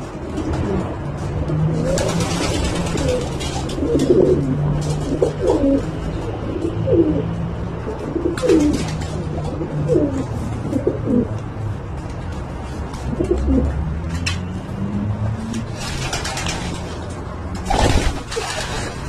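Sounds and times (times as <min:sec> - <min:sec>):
pigeons cooing: 0:00.3 - 0:11.4, 0:13.1 - 0:13.8.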